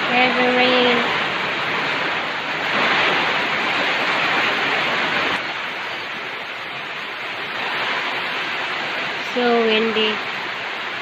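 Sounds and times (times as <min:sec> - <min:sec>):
heavy rain pouring: 0:00.0 - 0:11.0
strong wind: 0:00.0 - 0:11.0.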